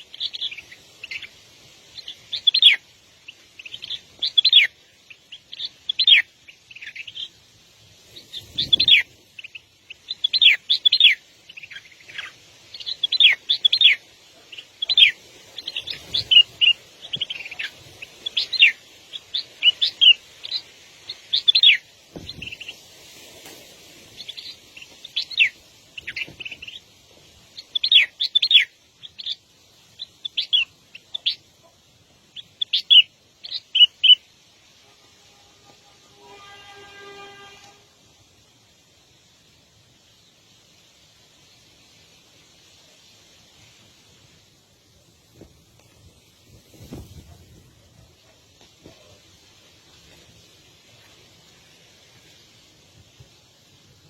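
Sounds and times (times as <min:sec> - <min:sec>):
small bird chirping: 0:00.0 - 0:22.9, 0:24.1 - 0:34.4.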